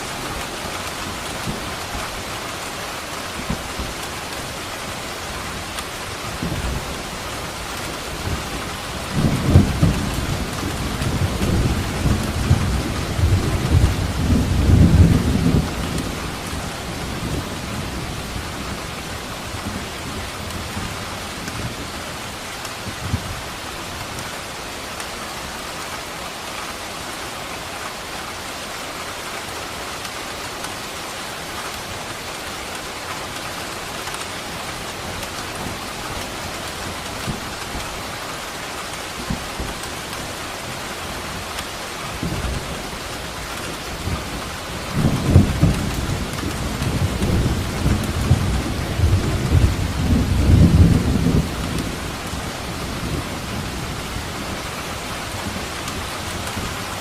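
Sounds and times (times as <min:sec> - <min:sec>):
heavy rain falling: 0:00.0 - 0:57.0
rolling thunder: 0:08.2 - 0:18.8, 0:44.0 - 0:54.6.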